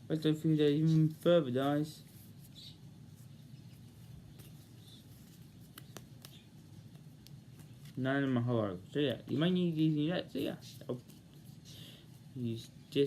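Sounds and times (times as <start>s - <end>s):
low room hum: 0.0s - 13.0s
cards clicking and tapping: 4.3s - 7.9s.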